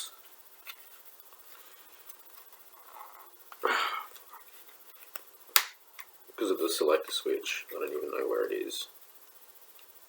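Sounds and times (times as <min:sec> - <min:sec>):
faint ticks of small parts: 0:09.1 - 0:10.0.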